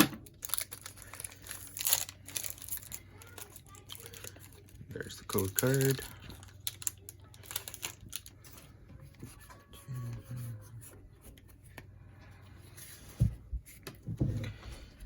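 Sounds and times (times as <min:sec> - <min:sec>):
trading cards rustling: 0:00.3 - 0:10.2.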